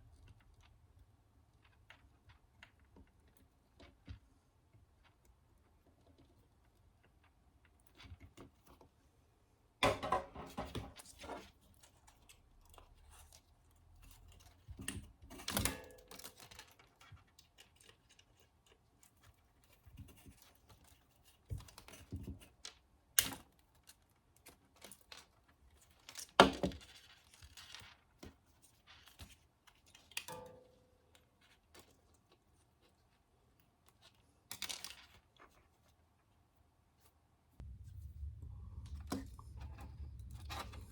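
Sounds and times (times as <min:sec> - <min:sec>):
small parts and tools handled: 0:33.8 - 0:36.0.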